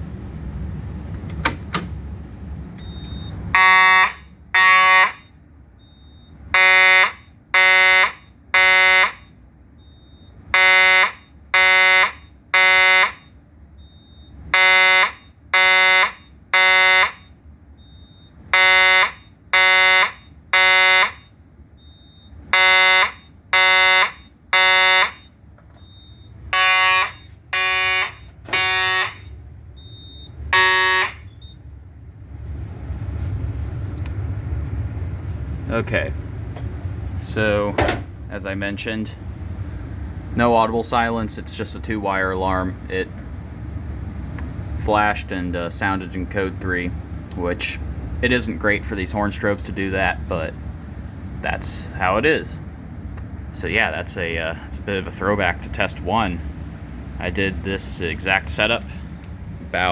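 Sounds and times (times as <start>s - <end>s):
fire alarm horn blasts: 2.8s - 31.6s.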